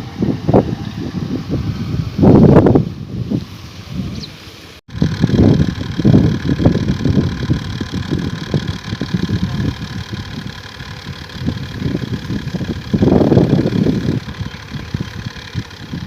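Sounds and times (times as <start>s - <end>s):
harvester engine rumbling: 4.9s - 16.0s.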